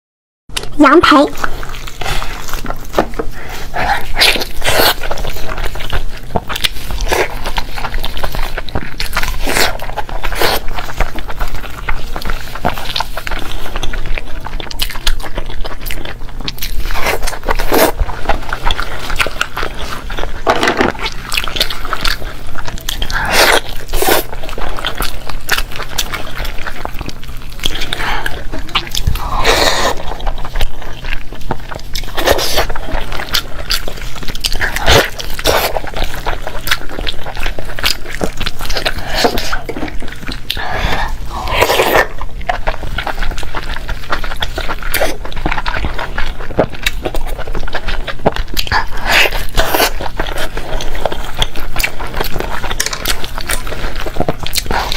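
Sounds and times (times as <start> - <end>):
crunchy chewing: 0.6 - 54.9.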